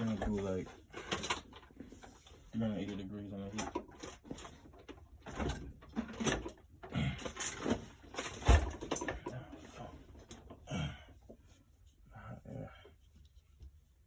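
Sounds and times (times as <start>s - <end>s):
tools and parts clattering: 0.0s - 10.7s.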